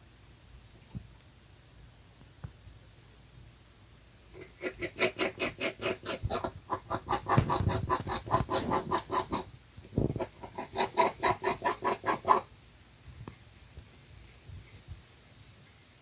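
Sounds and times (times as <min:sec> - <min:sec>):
animal chattering call: 0:04.4 - 0:12.5.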